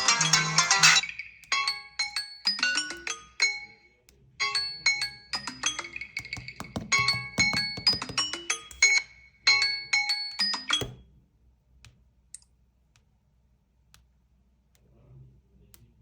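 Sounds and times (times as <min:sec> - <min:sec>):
phone ringtone melody: 0:00.0 - 0:08.9, 0:09.5 - 0:11.0.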